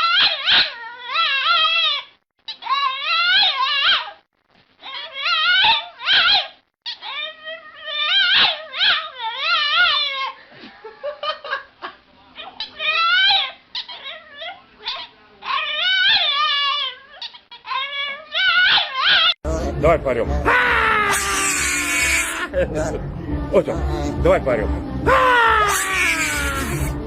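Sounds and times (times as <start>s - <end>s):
dog whining and howling: 0.0s - 4.2s, 4.8s - 10.4s, 12.6s - 19.4s, 25.1s - 27.0s.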